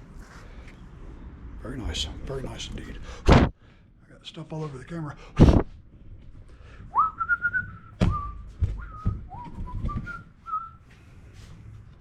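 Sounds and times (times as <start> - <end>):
person whistling a tune: 6.9 - 10.8.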